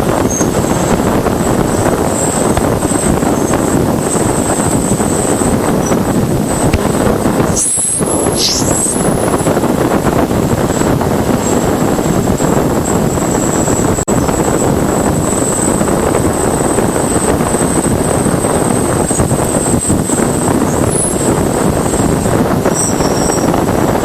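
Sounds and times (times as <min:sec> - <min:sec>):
rushing static: 0:00.0 - 0:24.0
thin high steady tone: 0:06.6 - 0:09.6.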